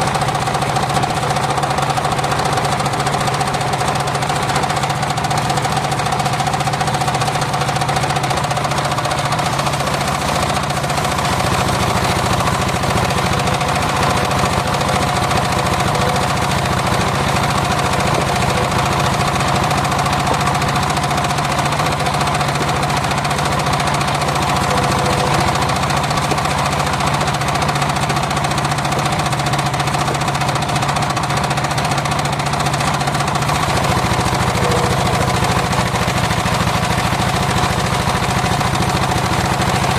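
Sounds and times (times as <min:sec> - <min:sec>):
sawmill engine drone: 0:00.0 - 0:39.9.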